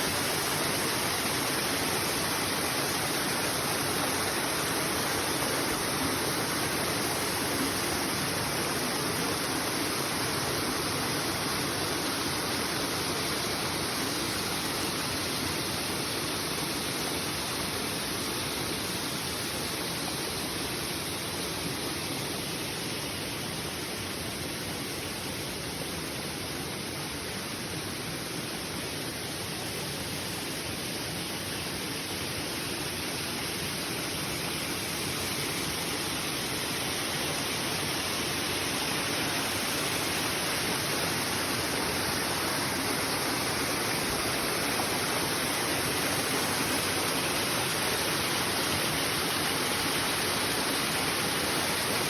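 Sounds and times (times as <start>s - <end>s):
waterfall rushing: 0.0s - 16.3s, 31.5s - 52.0s.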